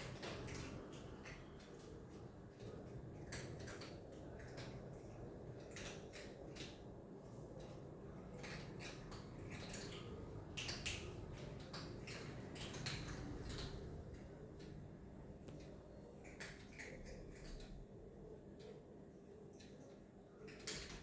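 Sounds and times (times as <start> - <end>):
animal chewing food noisily: 0.0 - 14.8.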